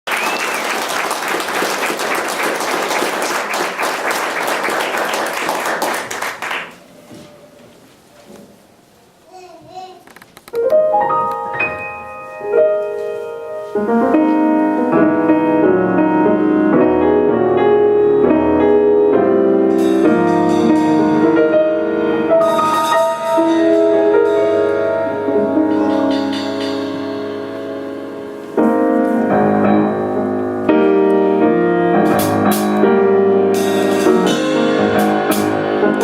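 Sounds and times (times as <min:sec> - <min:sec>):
live piano music: 0:10.5 - 0:36.0.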